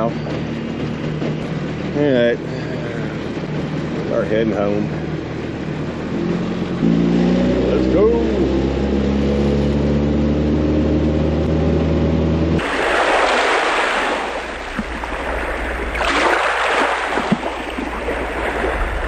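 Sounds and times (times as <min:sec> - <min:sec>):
boat motor running: 0:00.0 - 0:19.0
rushing wind and water: 0:12.6 - 0:19.0.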